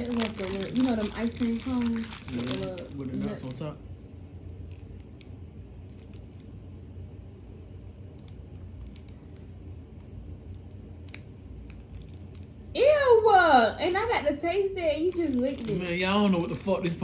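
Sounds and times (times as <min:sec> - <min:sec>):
low steady hum: 0:00.0 - 0:17.0
faint clicks and ticks: 0:08.0 - 0:12.6.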